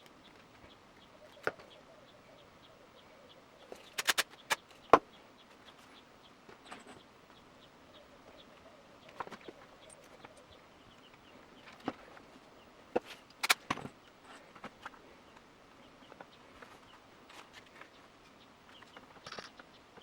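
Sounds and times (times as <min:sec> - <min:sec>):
tools clicking and knocking: 0:03.7 - 0:04.6.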